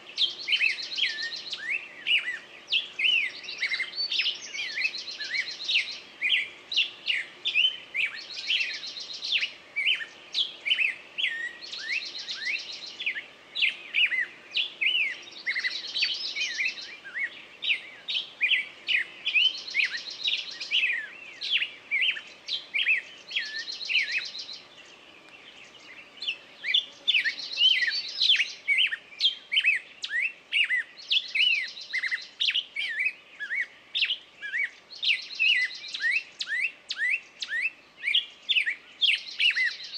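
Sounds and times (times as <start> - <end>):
birds chirping and whistling: 0.2 - 24.6, 25.3 - 39.9.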